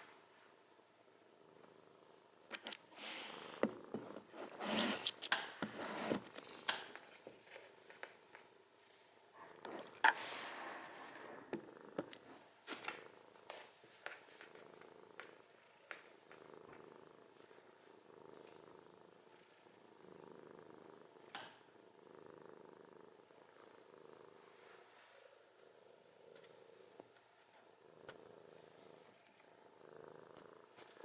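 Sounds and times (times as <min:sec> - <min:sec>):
cat snoring: 0:09.6 - 0:12.5, 0:16.3 - 0:26.0, 0:27.8 - 0:31.0.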